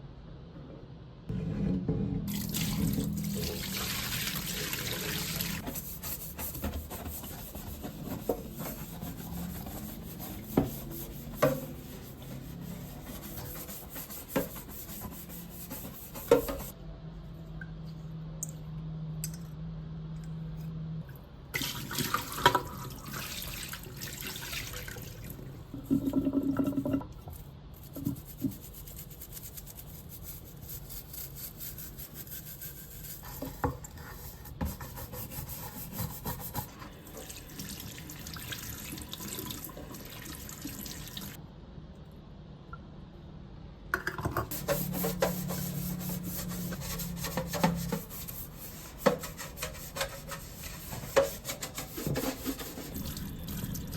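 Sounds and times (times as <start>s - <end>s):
tap water running into sink: 2.3s - 5.6s.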